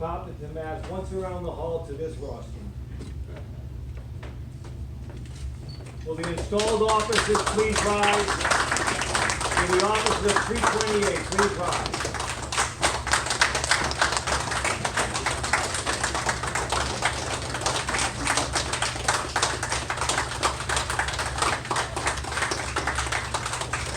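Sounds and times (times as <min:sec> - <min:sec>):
low steady hum: 0:00.0 - 0:23.9
audience applauding: 0:06.1 - 0:23.9.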